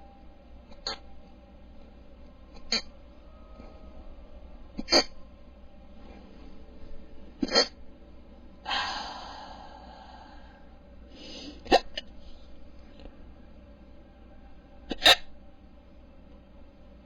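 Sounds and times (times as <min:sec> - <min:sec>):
man hiccuping: 0:04.8 - 0:05.2, 0:07.4 - 0:07.8, 0:11.7 - 0:12.0
long noisy breath: 0:08.6 - 0:12.6.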